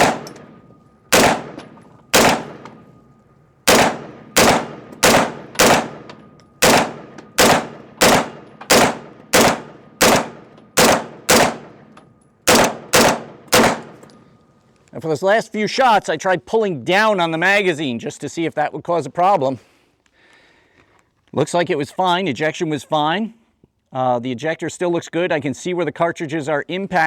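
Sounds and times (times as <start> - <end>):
carbine semi-automatic shots: 0.0 - 3.0, 3.7 - 14.2.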